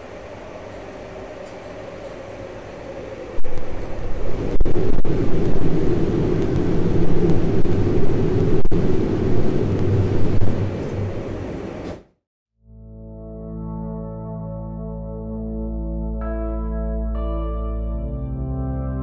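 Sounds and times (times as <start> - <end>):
heavy machine rumbling drone: 0.0 - 11.8.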